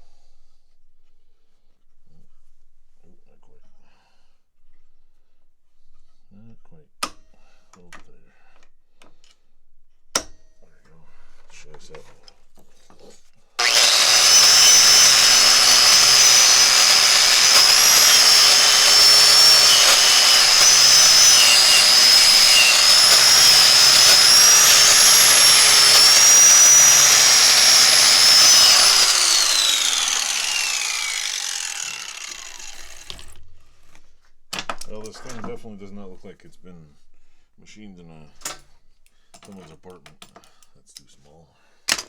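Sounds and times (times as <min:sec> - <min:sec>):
wire-brush grinder whining: 0:13.6 - 0:33.4.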